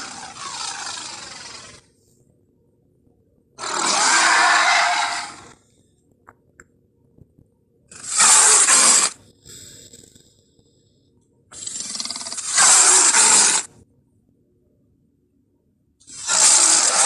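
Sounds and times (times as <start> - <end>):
dinosaur roars: 0.0 - 1.8, 3.6 - 5.6.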